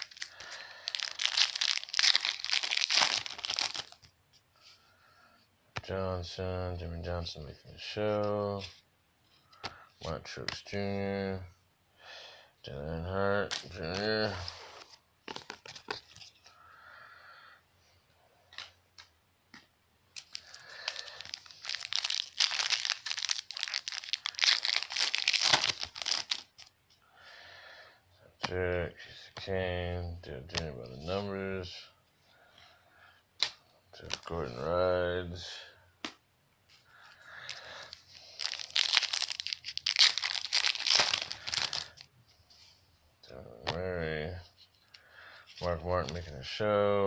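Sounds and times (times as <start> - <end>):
wrapper tearing and crinkling: 0.0 - 4.1, 20.2 - 26.7, 37.4 - 42.0.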